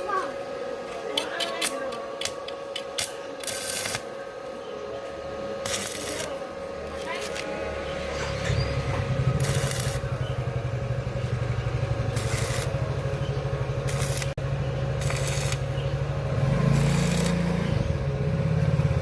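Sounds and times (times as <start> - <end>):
engine running: 5.1 - 19.0.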